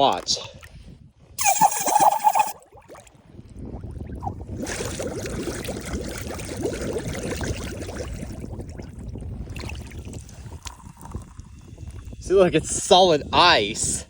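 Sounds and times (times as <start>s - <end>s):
underwater gas bubbling gurgle: 4.6s - 8.5s.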